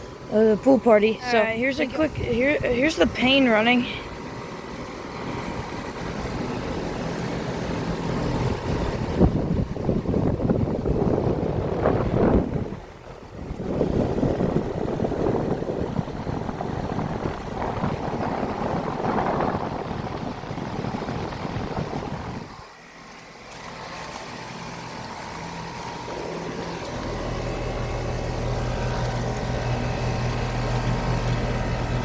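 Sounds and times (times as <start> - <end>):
compressor low hum: 0.0 - 32.0
fan rushing air: 0.0 - 32.0
wind buffeting microphone: 8.2 - 22.7.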